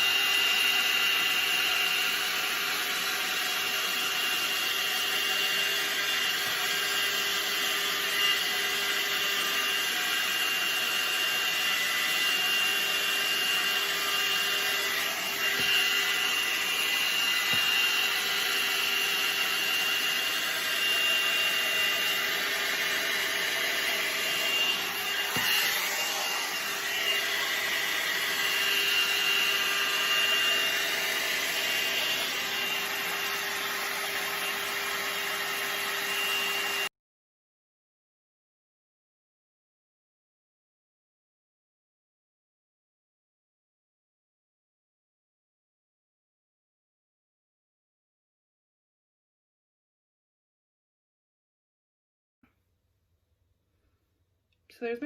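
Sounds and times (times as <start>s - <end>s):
hot air brush fan whine: 0.0s - 36.9s.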